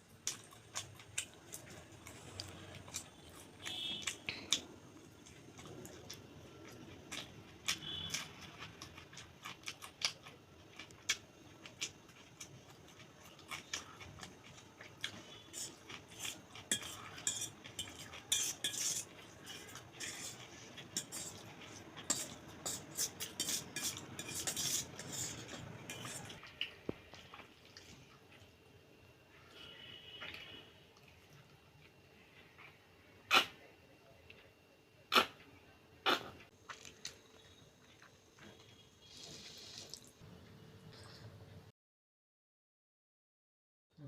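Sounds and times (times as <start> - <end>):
cutlery clinking on a plate: 16.7 - 19.1.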